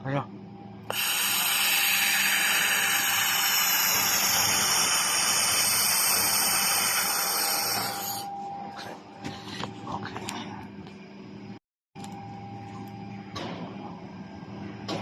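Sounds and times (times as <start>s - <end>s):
laser welder hissing and whining: 0.9s - 8.3s.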